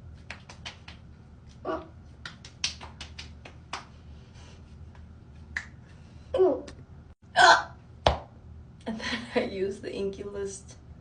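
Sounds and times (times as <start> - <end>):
fingers patting skin: 0.2 - 4.0.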